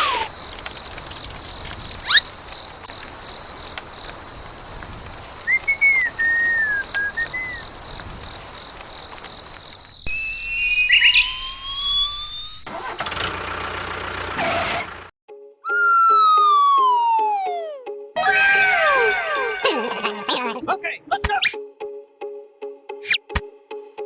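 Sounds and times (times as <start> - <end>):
whistled glides: 0.0 - 3.1, 4.9 - 12.7, 15.7 - 20.3.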